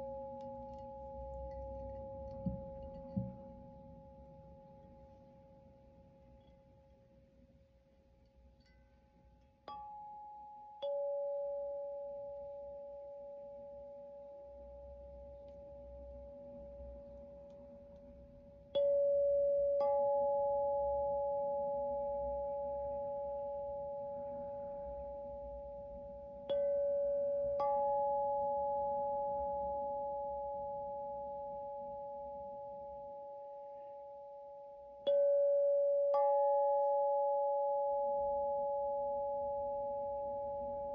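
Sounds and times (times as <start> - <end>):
singing bowls ringing: 9.6 - 17.5, 18.5 - 40.9.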